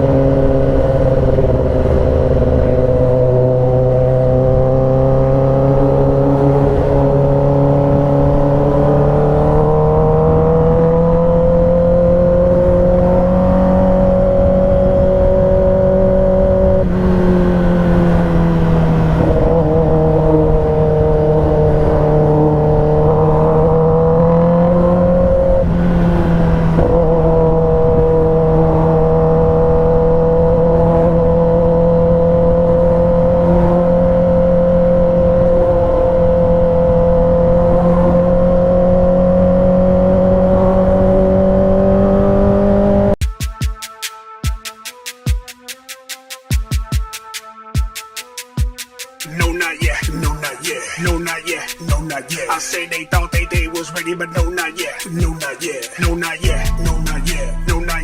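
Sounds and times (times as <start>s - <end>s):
motorcycle engine running: 0.0s - 43.2s.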